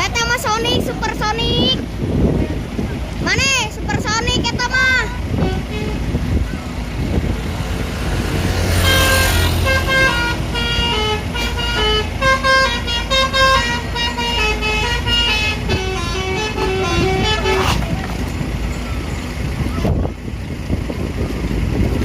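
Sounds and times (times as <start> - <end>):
bus engine rumble: 0.0 - 22.0
multi-tone bus horn tune: 4.7 - 18.0.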